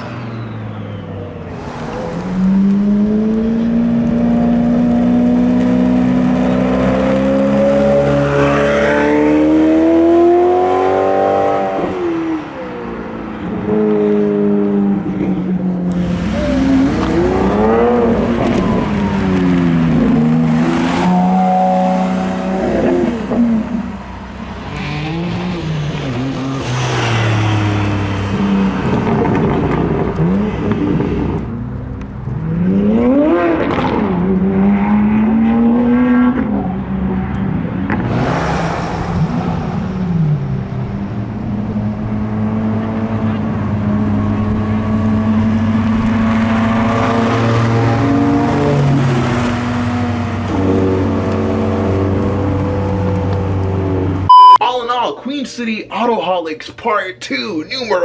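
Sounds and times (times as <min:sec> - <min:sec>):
car engines revving: 0:00.0 - 0:54.6
engines running steadily: 0:11.9 - 0:54.6.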